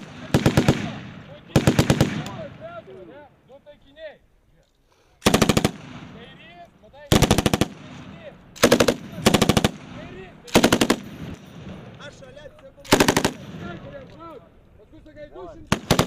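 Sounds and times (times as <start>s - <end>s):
machine gun firing bursts: 0.0s - 2.5s, 5.2s - 6.1s, 7.1s - 8.0s, 8.6s - 11.6s, 12.8s - 13.7s, 15.7s - 16.0s.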